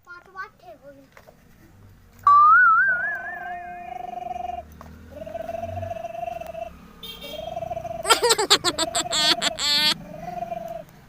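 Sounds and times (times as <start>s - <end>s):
toy warbling tone: 8.1s - 10.0s.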